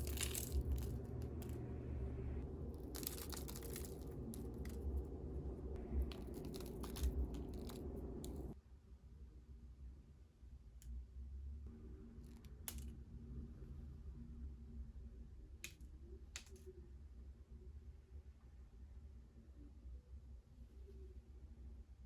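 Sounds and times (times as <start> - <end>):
low hum: 0.0 - 8.6.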